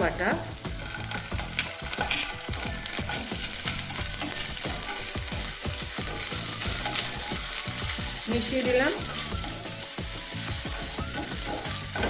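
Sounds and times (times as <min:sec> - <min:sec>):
masala sizzling in a pan: 0:00.0 - 0:12.0
spatula scraping a pan: 0:00.7 - 0:12.0.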